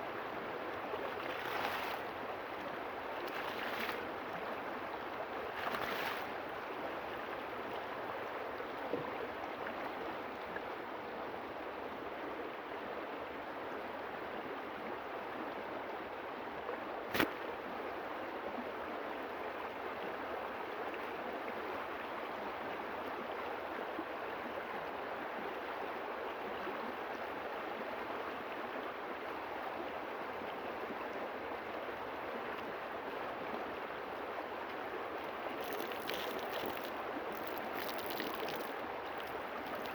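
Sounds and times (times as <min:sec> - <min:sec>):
river water flowing: 0:30.1 - 0:39.9.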